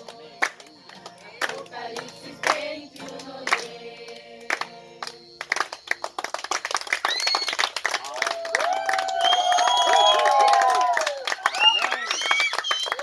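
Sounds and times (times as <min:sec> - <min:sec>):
hand clapping: 0:00.0 - 0:03.8, 0:04.5 - 0:13.0
group singing: 0:00.0 - 0:05.3
group applause: 0:05.4 - 0:13.0.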